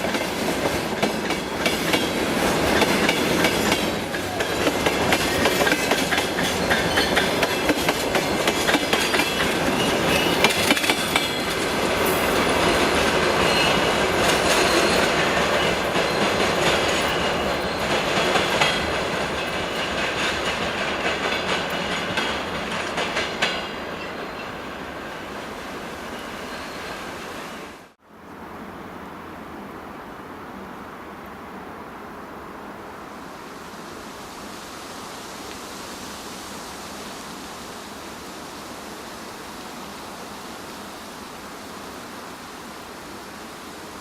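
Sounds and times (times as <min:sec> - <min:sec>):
train wheels clattering over rail joints: 0:00.0 - 0:24.5.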